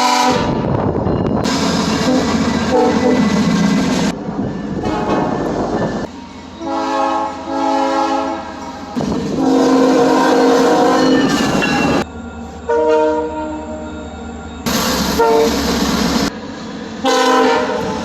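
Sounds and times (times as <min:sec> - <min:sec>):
train horn blasts: 0:00.0 - 0:00.6, 0:01.5 - 0:03.3, 0:04.8 - 0:05.4, 0:06.6 - 0:12.0, 0:12.7 - 0:14.0, 0:15.0 - 0:15.7, 0:17.0 - 0:18.0
train running noise: 0:00.0 - 0:18.0.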